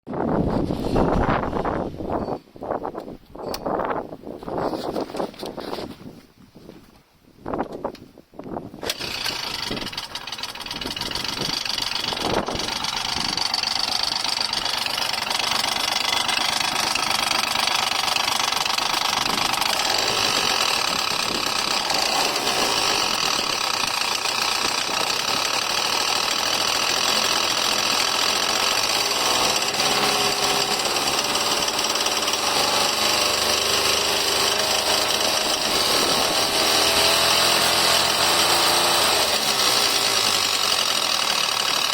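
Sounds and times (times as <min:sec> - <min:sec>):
scooter engine starting and running: 0:08.8 - 0:41.9.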